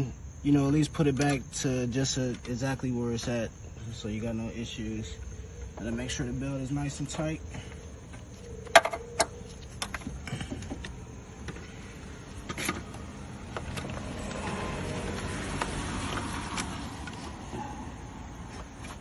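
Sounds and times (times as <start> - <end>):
vehicle passing: 11.6 - 18.8.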